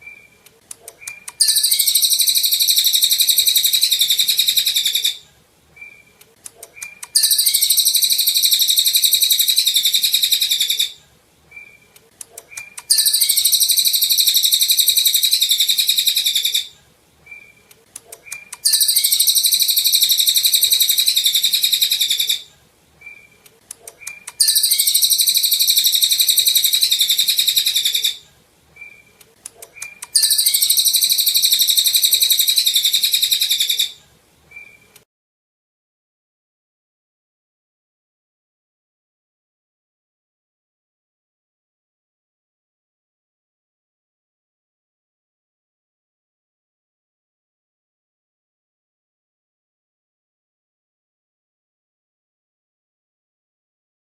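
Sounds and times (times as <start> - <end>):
songbird twittering: 0.0 - 5.2, 5.8 - 16.7, 17.3 - 28.2, 28.8 - 34.9.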